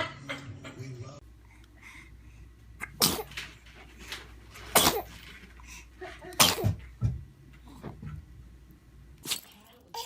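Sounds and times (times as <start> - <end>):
baby sneezing: 2.8 - 3.4, 4.7 - 5.2, 6.4 - 6.8.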